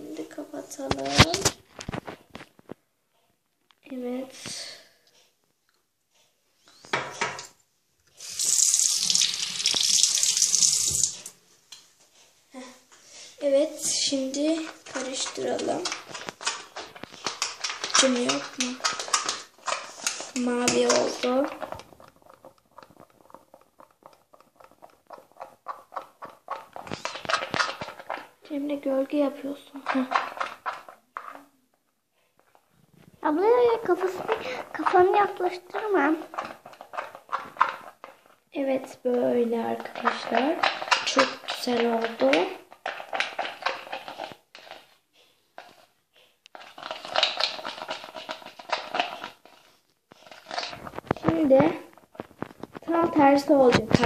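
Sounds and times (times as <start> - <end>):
crinkling rustling handling noise: 0.2 - 4.0, 10.9 - 31.5, 32.2 - 54.0
slime squelching while stirred: 12.1 - 54.0.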